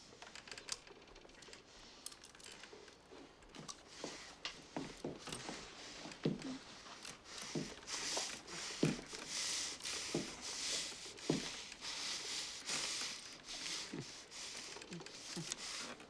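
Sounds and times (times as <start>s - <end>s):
man breathing hard: 6.1s - 16.0s.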